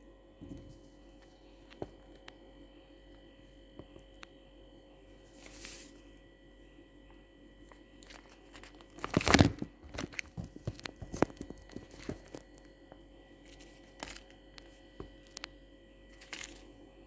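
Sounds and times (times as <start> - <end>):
sachet crinkling: 8.0 - 12.7
loud tearing crackle: 8.6 - 12.4.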